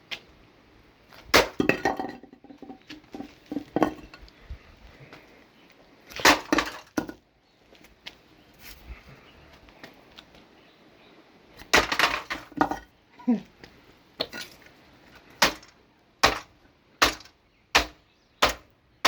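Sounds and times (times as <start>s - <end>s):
brick crashing onto sheet metal: 1.3s - 4.2s, 6.1s - 7.2s, 11.6s - 12.9s, 15.4s - 18.6s.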